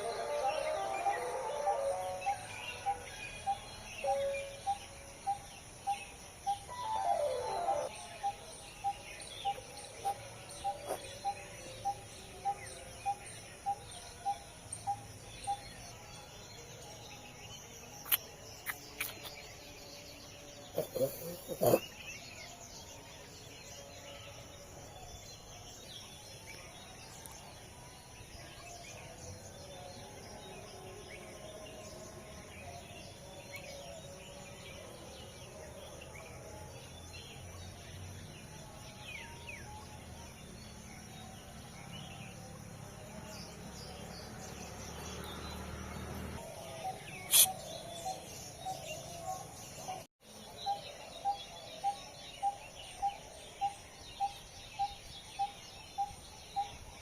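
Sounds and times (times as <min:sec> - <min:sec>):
faint bird chirps: 0:00.0 - 0:15.6, 0:17.9 - 0:22.6, 0:46.6 - 0:56.9
short repeated calls: 0:47.2 - 0:47.6.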